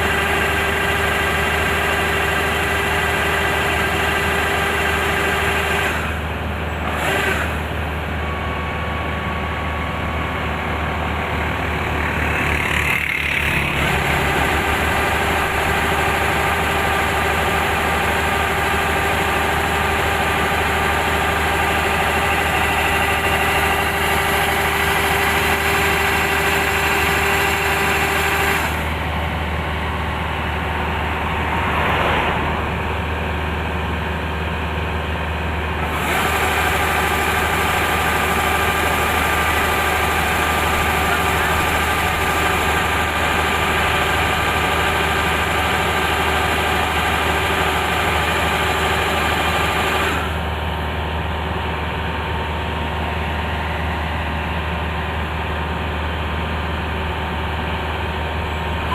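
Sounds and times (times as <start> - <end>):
combine harvester droning: 0.0 - 58.9
brief rushing sound: 31.0 - 34.1.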